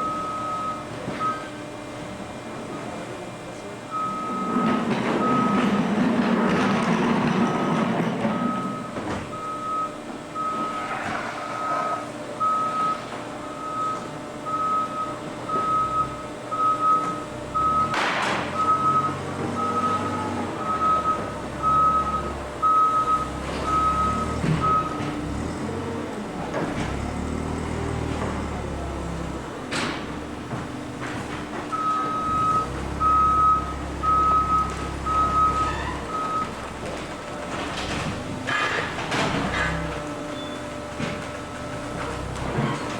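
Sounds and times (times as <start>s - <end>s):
reversing alarm beeping: 0.0s - 1.6s, 3.9s - 5.9s, 7.3s - 26.1s, 30.9s - 42.9s
engine running: 17.3s - 42.9s.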